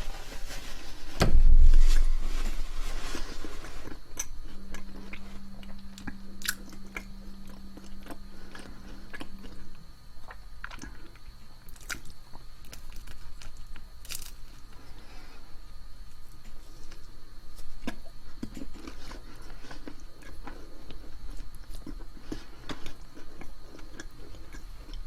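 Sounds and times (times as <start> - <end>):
faint low hum: 0.0 - 25.0
chewing and biting: 17.8 - 25.0.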